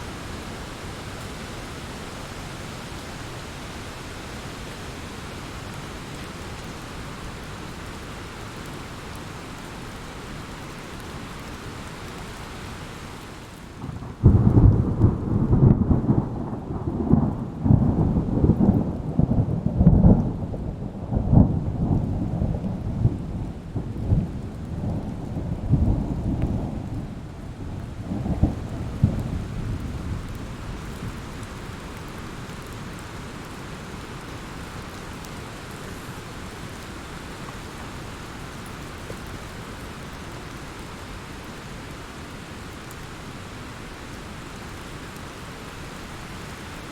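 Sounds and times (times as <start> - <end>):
rain hiss: 0.0 - 46.9
thunder rumbling: 13.8 - 31.7.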